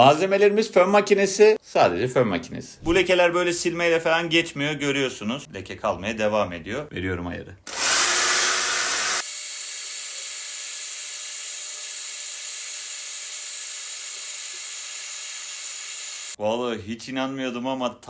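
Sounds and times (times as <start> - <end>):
hair dryer blowing: 7.7 - 16.4.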